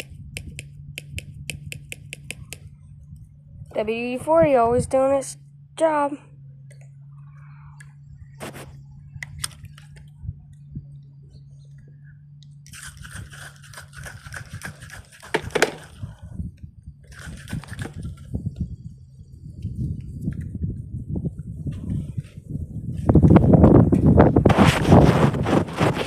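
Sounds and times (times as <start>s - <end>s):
sharp clicks: 0.0s - 2.7s.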